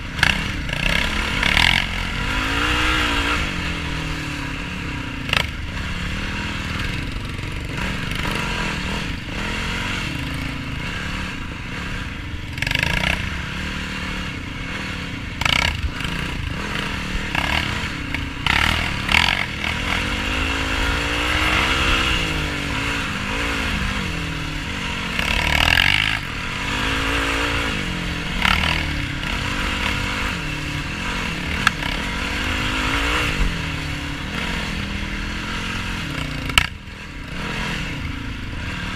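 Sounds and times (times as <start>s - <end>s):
quad engine revving: 0.0s - 38.9s.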